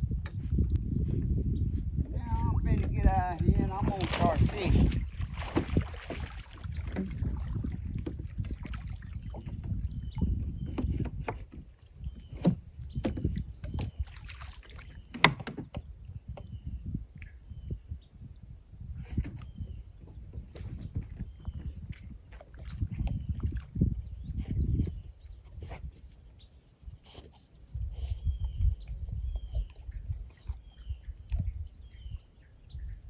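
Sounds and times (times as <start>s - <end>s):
high insect drone: 0.0s - 22.4s
paddle knocking against hull: 1.9s - 16.6s
water sloshing: 2.0s - 15.9s.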